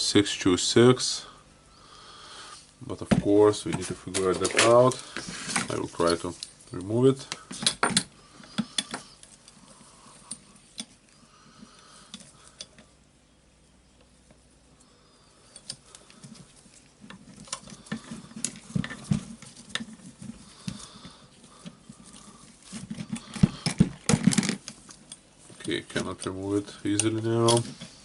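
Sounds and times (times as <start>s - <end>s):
small metal tools clicking and scraping: 4.2s - 11.0s, 15.4s - 19.0s, 26.5s - 27.9s.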